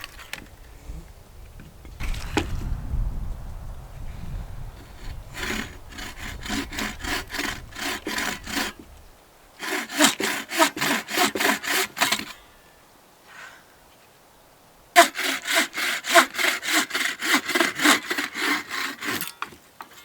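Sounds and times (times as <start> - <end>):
saw cutting through a log: 4.8 - 8.9, 9.6 - 12.4, 15.0 - 19.4.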